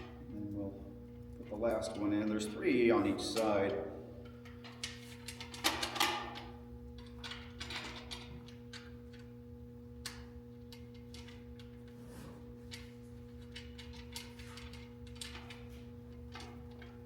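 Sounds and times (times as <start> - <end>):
steady low hum: 0.0 - 17.0
metal parts clicking and rattling: 10.0 - 11.8, 12.7 - 17.0.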